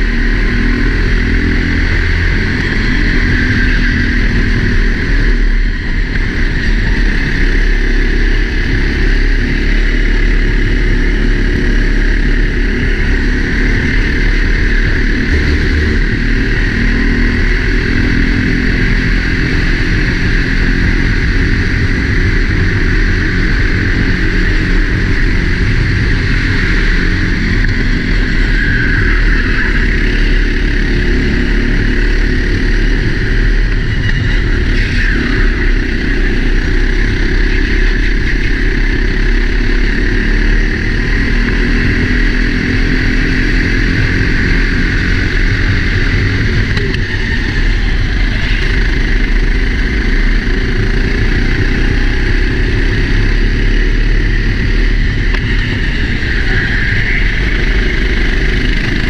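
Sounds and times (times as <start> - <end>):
kart engine running under load: 0.0 - 59.0.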